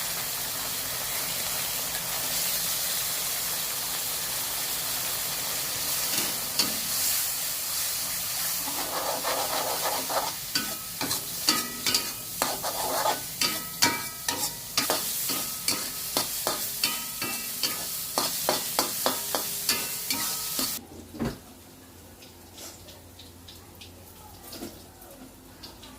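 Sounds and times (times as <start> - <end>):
food sizzling in a pan: 0.0 - 20.8
spatula scraping a pan: 8.6 - 20.8.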